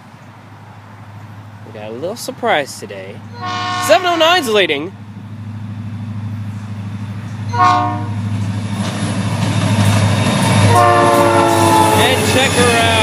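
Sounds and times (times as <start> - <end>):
diesel locomotive engine rumble: 0.0 - 13.0
train rail noise: 0.0 - 13.0
train horn blast: 3.3 - 4.6, 7.5 - 8.3, 10.6 - 13.0.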